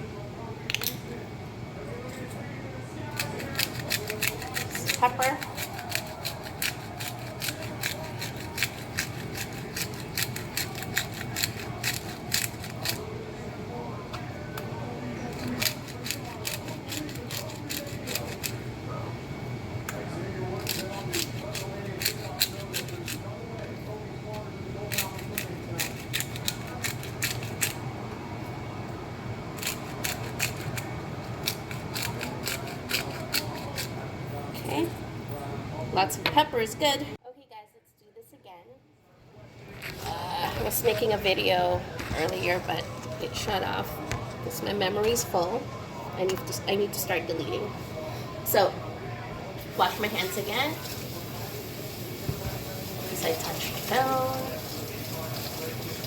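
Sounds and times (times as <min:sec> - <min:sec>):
pepper grinder crunching: 0:03.1 - 0:13.1, 0:15.2 - 0:18.7, 0:20.5 - 0:23.3, 0:24.3 - 0:27.8, 0:29.6 - 0:34.0.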